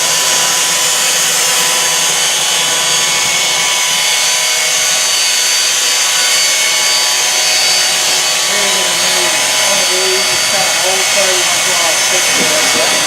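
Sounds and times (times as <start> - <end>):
boat motor running: 4.7 - 13.0.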